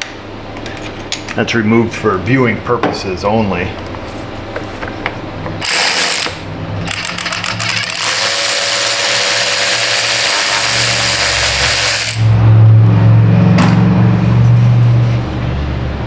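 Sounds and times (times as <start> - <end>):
power tool clicking and whirring: 5.6 - 12.3.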